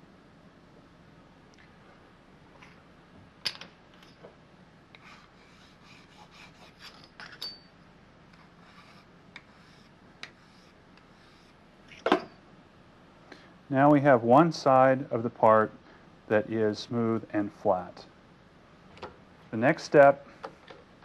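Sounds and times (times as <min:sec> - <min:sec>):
metal tools clicking and scraping: 0:06.8 - 0:07.7.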